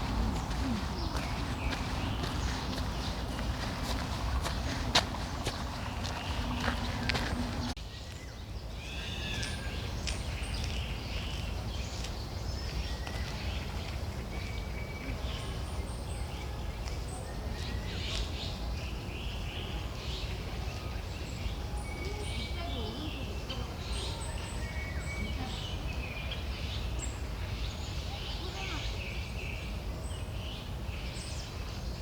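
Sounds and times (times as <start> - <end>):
birds chirping and calling: 0.0 - 7.8.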